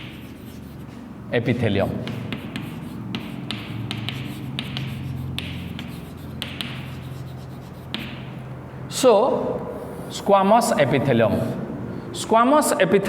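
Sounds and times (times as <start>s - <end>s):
pen scratching on paper: 0.0s - 1.0s, 2.1s - 8.3s
pen taps: 2.0s - 7.0s, 7.8s - 8.3s.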